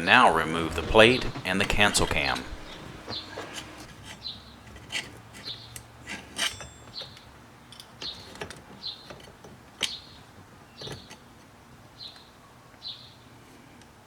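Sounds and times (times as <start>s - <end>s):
metal parts clicking and scraping: 2.4s - 10.0s.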